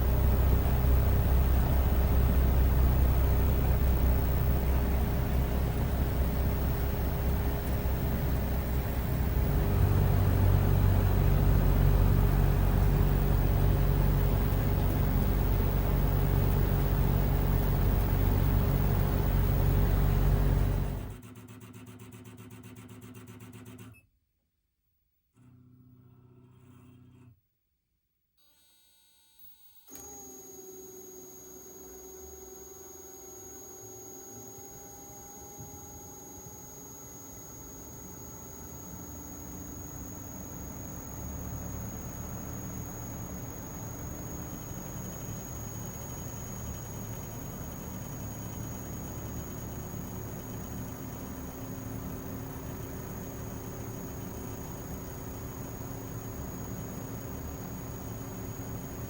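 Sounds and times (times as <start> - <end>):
air conditioner fan running: 0.0 - 21.2
faint steady tone: 0.0 - 21.2, 28.4 - 59.0.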